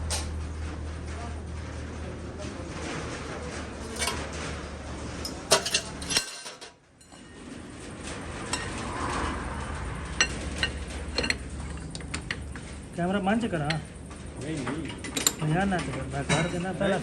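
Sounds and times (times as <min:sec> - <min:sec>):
low machine hum: 0:00.0 - 0:06.6
metal parts clinking: 0:03.8 - 0:04.4, 0:05.2 - 0:07.2.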